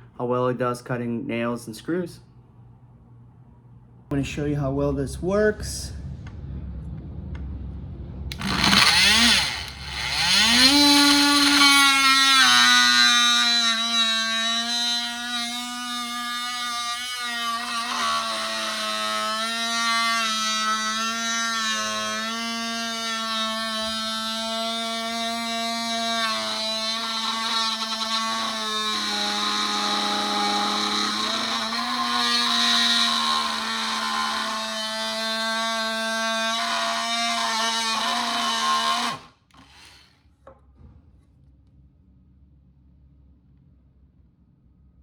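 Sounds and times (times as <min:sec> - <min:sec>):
multi-tool motor whining: 0:08.3 - 0:40.2.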